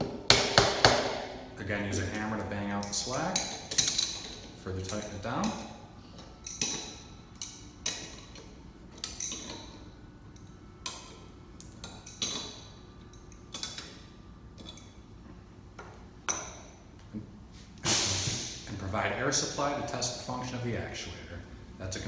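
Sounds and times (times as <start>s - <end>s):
wrench clicking on metal clamp: 2.8s - 5.6s, 6.2s - 9.8s.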